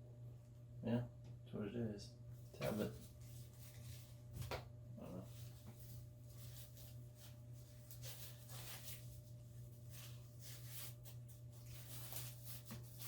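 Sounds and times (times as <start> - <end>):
steady low hum: 0.0 - 13.0
soft scrapes and touches: 2.4 - 4.4, 5.1 - 13.0
rustling and handling noises: 2.4 - 13.0.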